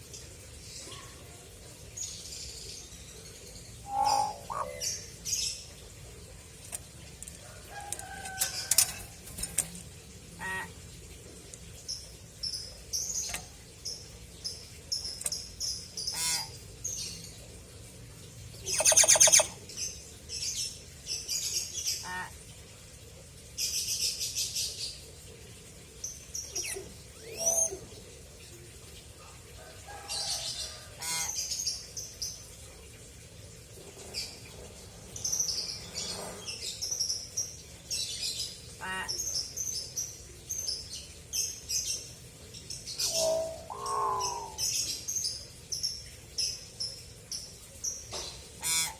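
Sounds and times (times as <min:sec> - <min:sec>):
buzzy bird call: 0:43.0 - 0:44.7.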